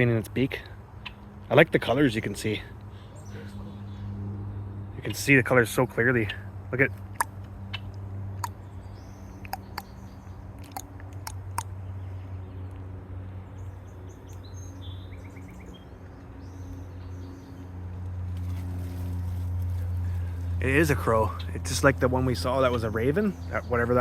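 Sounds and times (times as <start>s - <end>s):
small birds chirping: 0.0s - 24.0s
sharp clicks: 9.4s - 9.9s, 10.6s - 11.7s.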